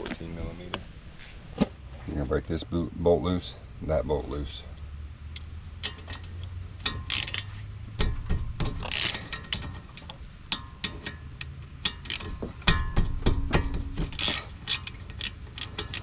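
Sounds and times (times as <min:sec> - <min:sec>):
metallic clinks: 0:06.8 - 0:07.5, 0:10.5 - 0:13.0, 0:14.2 - 0:16.0
ratchet wrench clicking: 0:06.8 - 0:07.6, 0:08.8 - 0:09.7, 0:10.5 - 0:12.4, 0:14.2 - 0:16.0.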